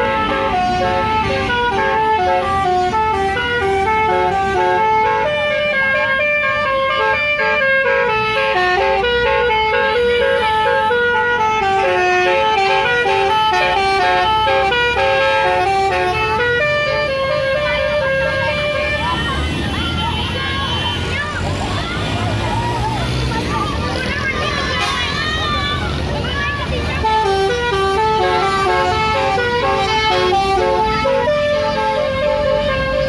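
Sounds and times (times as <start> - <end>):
multi-note air horn melody: 0.0 - 18.9, 27.0 - 33.0
bus rumble: 0.0 - 33.0.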